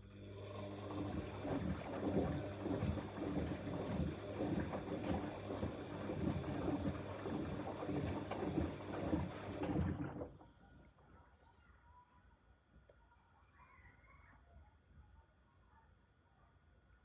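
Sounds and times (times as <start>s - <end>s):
washing machine drum sloshing: 1.0s - 10.4s.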